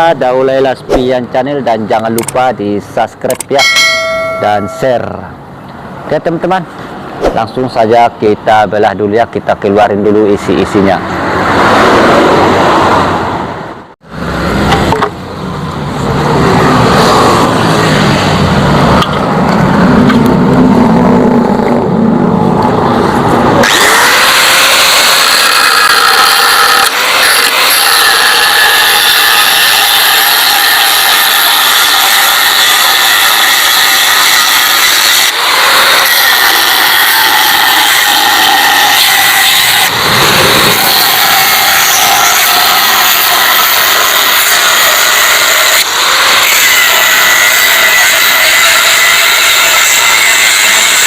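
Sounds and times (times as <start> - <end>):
angle grinder cutting metal: 3.6 - 5.0, 23.6 - 51.0
low rough machine noise: 14.1 - 51.0.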